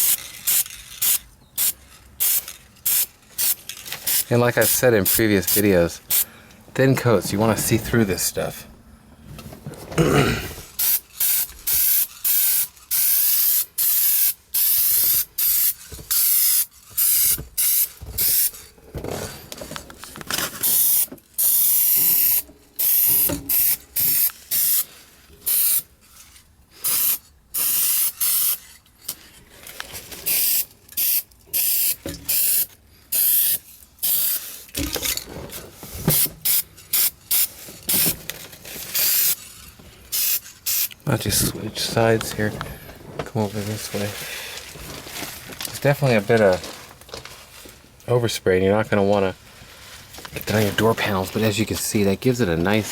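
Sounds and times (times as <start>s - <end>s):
spray paint can hissing: 0.0s - 6.2s, 10.7s - 18.6s, 20.6s - 24.9s, 25.5s - 25.9s, 26.8s - 28.6s, 30.3s - 34.8s, 36.1s - 38.1s, 38.9s - 39.4s, 40.1s - 41.0s.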